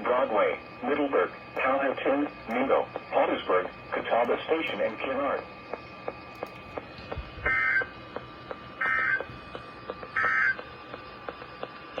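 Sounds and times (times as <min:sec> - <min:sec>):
warbling data tone bursts: 0:07.4 - 0:12.0.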